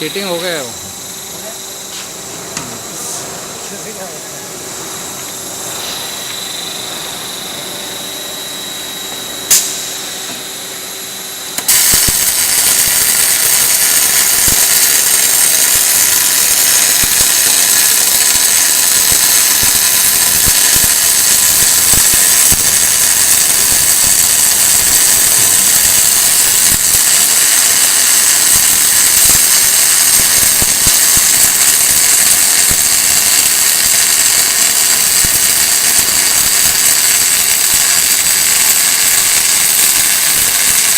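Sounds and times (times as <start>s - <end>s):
machine hum with high whine: 0.0s - 40.9s
welding arc crackling hiss: 0.0s - 40.9s.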